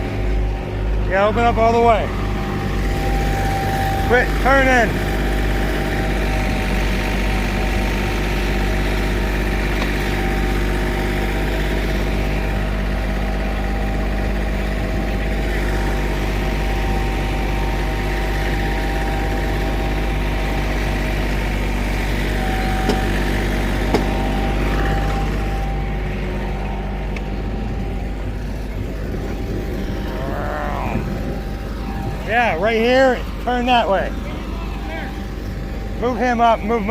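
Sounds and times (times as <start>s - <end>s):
heavy diesel engine running: 0.0s - 36.9s
short knocks: 22.7s - 24.3s.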